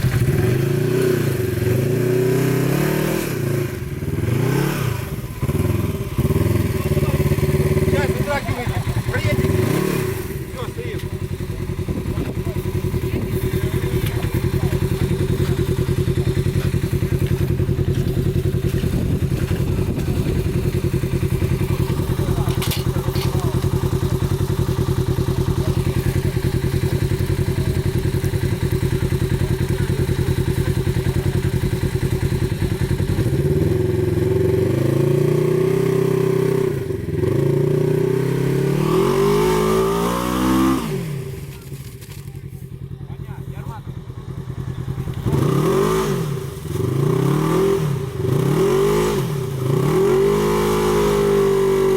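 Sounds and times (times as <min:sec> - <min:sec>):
off-road vehicle engine revving: 0:00.0 - 0:51.9.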